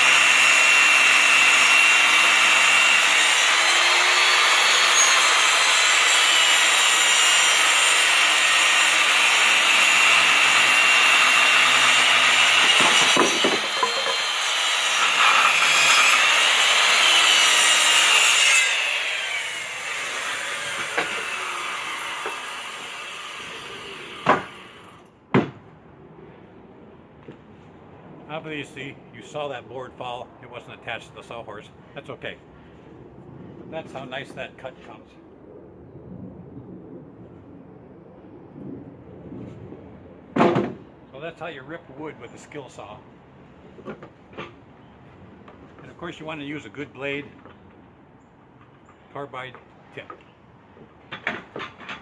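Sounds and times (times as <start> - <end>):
circular saw cutting wood: 0.0 - 25.1
wood piece falling with knocks: 12.6 - 14.2, 40.4 - 40.8.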